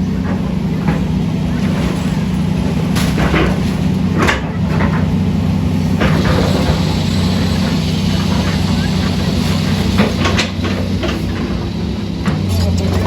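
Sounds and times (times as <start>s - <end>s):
diesel engine of heavy machinery: 0.0s - 13.0s.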